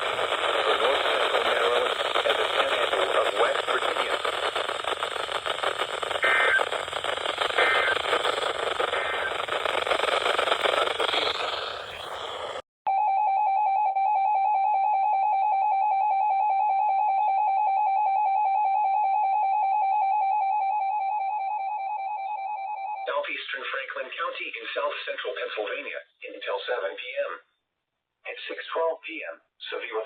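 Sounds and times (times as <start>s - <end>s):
radio static hiss: 0.0s - 12.6s
emergency alert tone: 10.9s - 23.1s.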